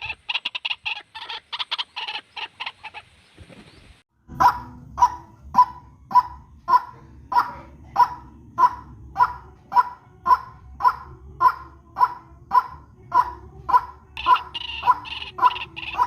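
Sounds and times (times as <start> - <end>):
waterhen harsh calls: 0.0 - 3.4, 6.1 - 16.0
higher-pitched bird call: 8.6 - 16.0.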